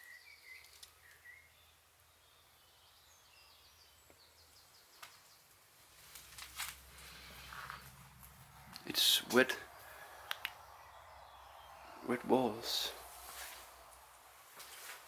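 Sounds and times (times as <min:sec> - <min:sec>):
faint bird chirps: 0:00.0 - 0:05.6
small clicks: 0:00.6 - 0:01.2
light rustle: 0:05.8 - 0:08.8, 0:12.9 - 0:15.0.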